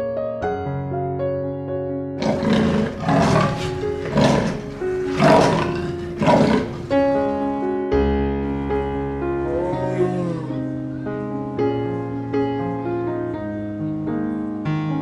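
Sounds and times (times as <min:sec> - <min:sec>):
piano background music: 0:00.0 - 0:15.0
animal roaring calls: 0:02.2 - 0:07.3.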